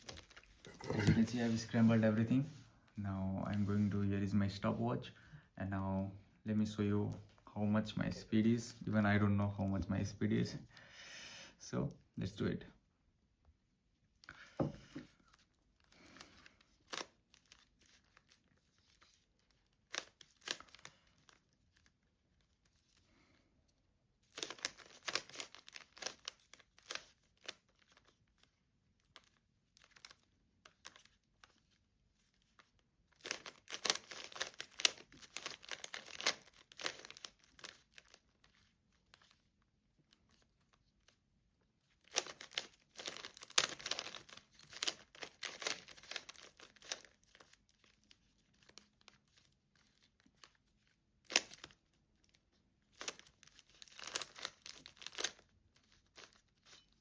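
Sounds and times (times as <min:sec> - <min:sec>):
puzzle cube clicking and rattling: 0:24.3 - 0:28.2, 0:32.6 - 0:39.5, 0:41.9 - 0:50.5, 0:52.9 - 0:56.7.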